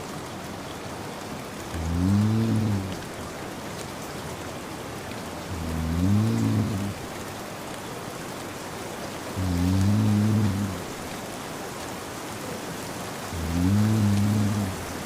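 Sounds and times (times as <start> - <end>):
steady rain: 0.0 - 15.0
man snoring: 1.8 - 3.1, 5.5 - 7.1, 9.4 - 11.0, 13.3 - 15.0.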